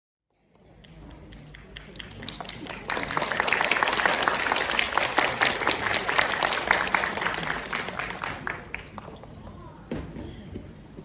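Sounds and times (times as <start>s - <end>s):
audience applauding: 1.5s - 9.2s.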